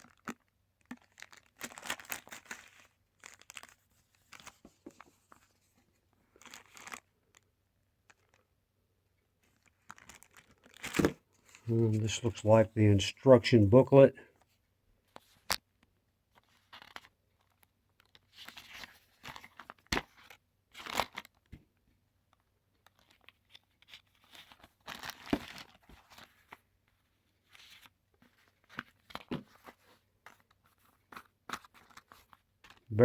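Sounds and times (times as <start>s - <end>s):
paper rustling and crinkling: 0.0s - 7.4s, 9.4s - 12.4s, 16.3s - 21.5s, 22.8s - 33.0s.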